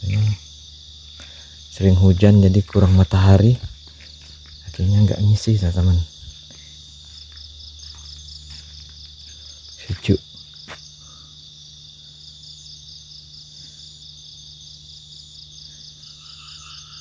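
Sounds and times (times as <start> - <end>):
night insects chirping: 0.0 - 17.0.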